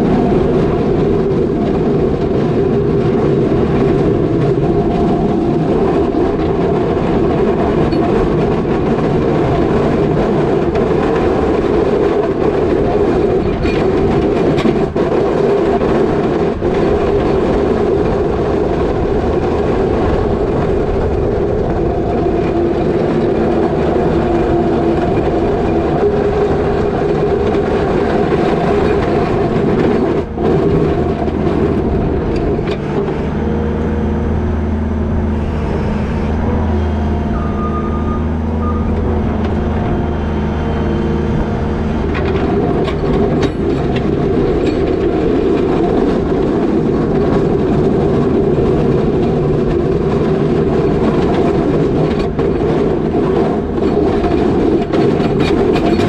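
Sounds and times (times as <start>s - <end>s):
diesel engine running: 0.0s - 56.0s
high beep: 37.3s - 39.1s.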